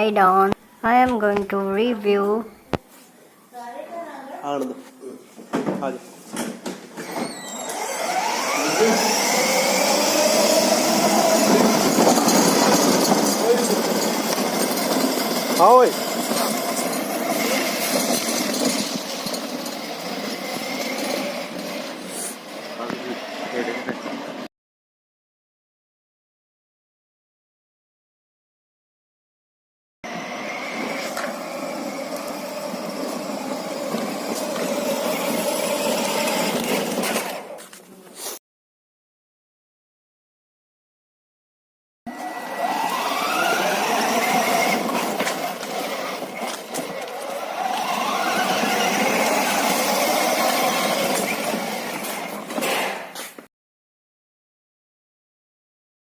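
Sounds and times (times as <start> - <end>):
electric motor whirring: 7.0 - 24.3, 30.1 - 37.6, 42.1 - 52.5.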